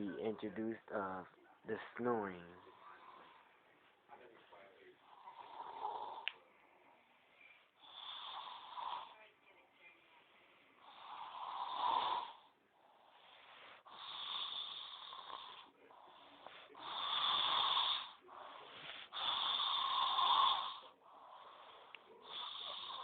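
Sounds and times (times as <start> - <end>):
quiet breaths: 0.0 - 23.0
person snoring: 5.0 - 6.3, 7.8 - 9.2, 10.8 - 23.0.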